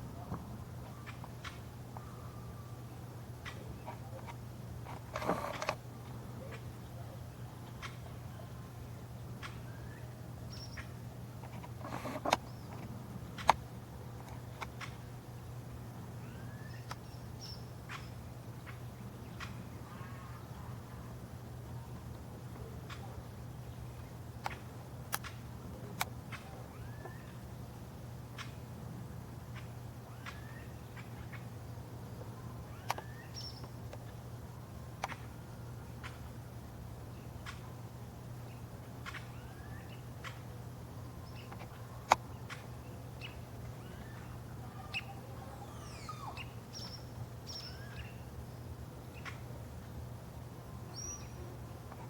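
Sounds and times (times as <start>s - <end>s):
steady low hum: 0.0s - 52.0s
short rising bird chirps: 43.2s - 48.2s.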